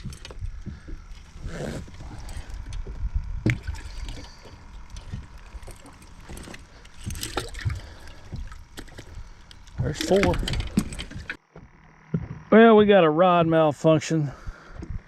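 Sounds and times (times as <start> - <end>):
handling knocks and clicks: 0.0 - 11.4
water sloshing against boat: 0.0 - 13.0
low rumble: 0.0 - 15.0.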